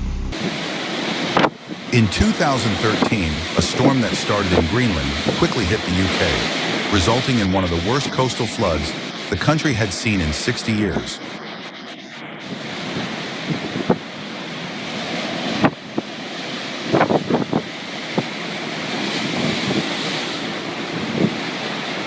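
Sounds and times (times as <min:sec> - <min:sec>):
storm waves breaking: 0:00.4 - 0:22.0
wind rushing over microphone: 0:12.4 - 0:18.4.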